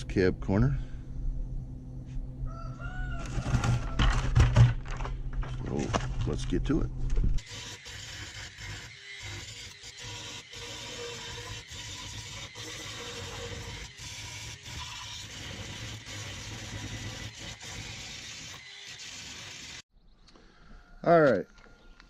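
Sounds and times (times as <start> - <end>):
grinder grinding metal: 7.4 - 19.8.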